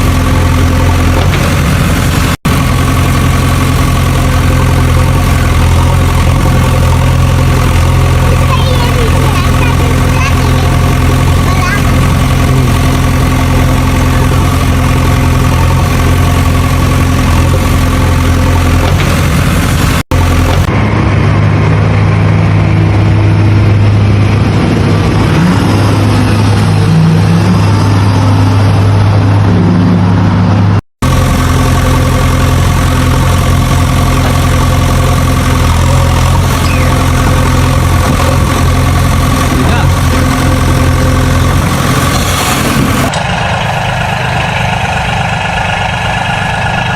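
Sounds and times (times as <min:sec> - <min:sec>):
engine idling: 0:00.0 - 0:46.9.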